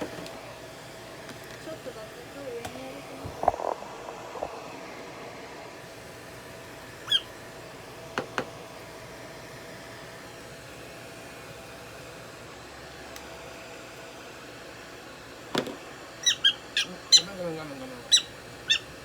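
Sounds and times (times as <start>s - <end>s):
steady low hum: 0.0s - 10.4s
prairie dog squeak: 7.0s - 7.3s, 16.2s - 18.9s.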